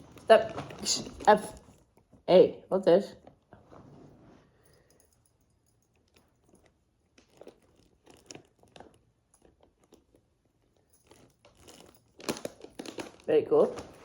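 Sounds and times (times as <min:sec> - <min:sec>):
packaging crinkling: 0:11.0 - 0:14.0.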